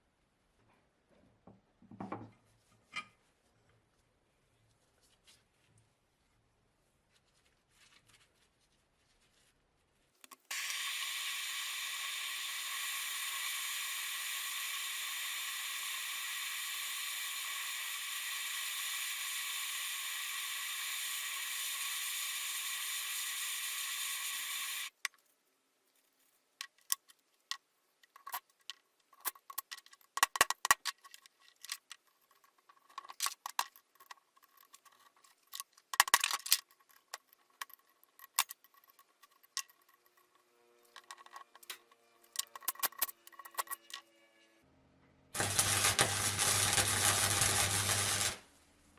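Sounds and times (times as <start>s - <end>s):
steady hiss: 10.5s - 25.0s.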